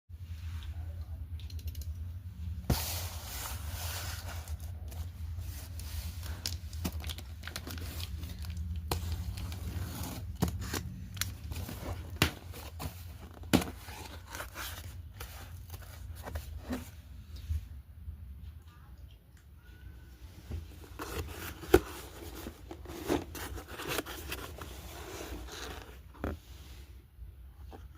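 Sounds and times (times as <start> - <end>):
packaging torn open and crinkling: 6.2 - 12.8.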